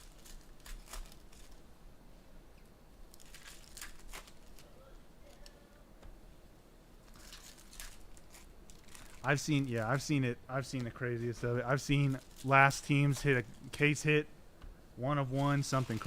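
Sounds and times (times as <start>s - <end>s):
foil wrappers crinkling and tearing: 0.0s - 1.6s, 3.1s - 4.7s, 7.0s - 13.8s, 15.2s - 16.0s.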